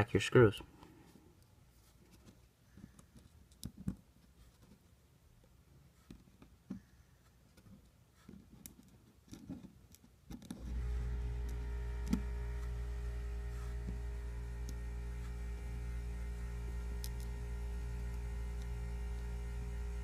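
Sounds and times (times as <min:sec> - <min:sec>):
steady electrical hum: 0:00.0 - 0:20.0
screwdriver clicks and taps: 0:11.5 - 0:12.2.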